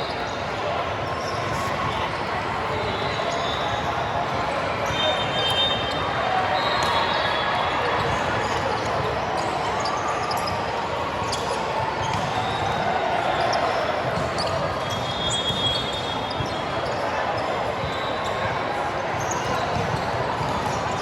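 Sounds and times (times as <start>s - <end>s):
crowd and player voices: 0.0s - 21.0s
high shoe squeaks: 11.2s - 18.5s.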